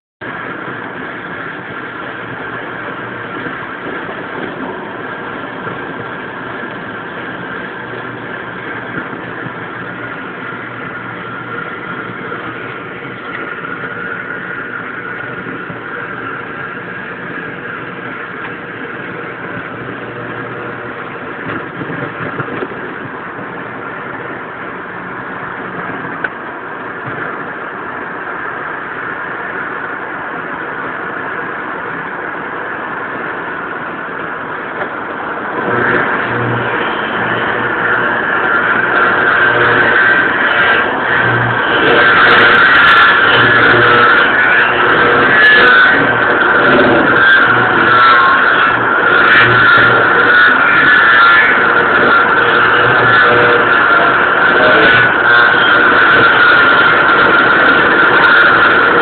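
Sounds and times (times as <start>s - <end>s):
faint whining tones: 0.2s - 59.0s
radio static hiss and buzz: 0.2s - 59.0s.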